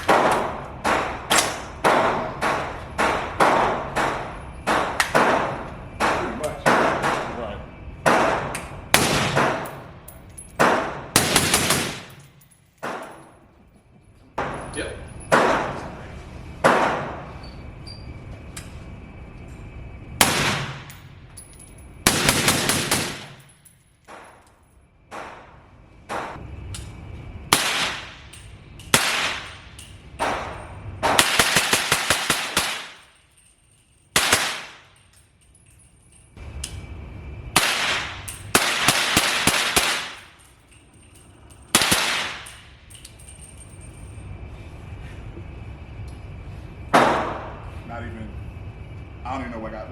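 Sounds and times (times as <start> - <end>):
suppressed gunshots: 9.0 - 9.7, 10.6 - 12.2, 20.2 - 20.9.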